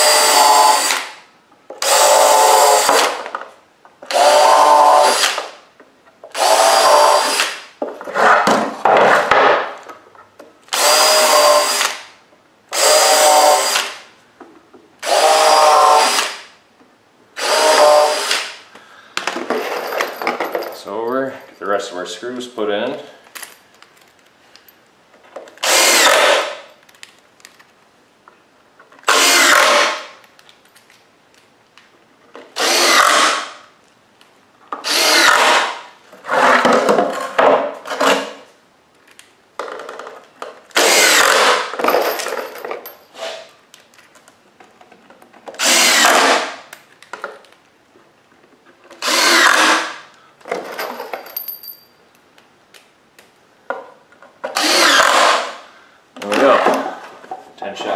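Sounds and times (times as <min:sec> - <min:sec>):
power drill driving screws into wood: 0:00.0 - 0:01.2, 0:01.8 - 0:03.3, 0:04.0 - 0:05.6, 0:06.3 - 0:07.7, 0:10.7 - 0:12.1, 0:12.7 - 0:14.1, 0:15.0 - 0:16.5, 0:17.4 - 0:18.6, 0:25.6 - 0:26.7, 0:29.0 - 0:30.2, 0:32.5 - 0:33.7, 0:34.8 - 0:36.6, 0:40.7 - 0:42.2, 0:45.6 - 0:46.7, 0:49.0 - 0:50.1, 0:54.4 - 0:55.7.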